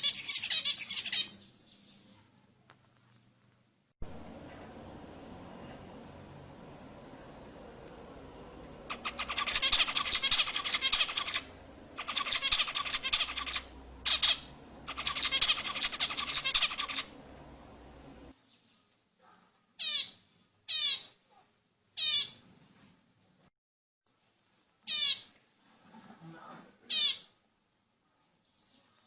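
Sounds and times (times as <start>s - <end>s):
zebra finches buzzy chatter: 0.0s - 1.4s, 8.7s - 18.3s
finch calls sliding down in pitch: 8.9s - 17.1s.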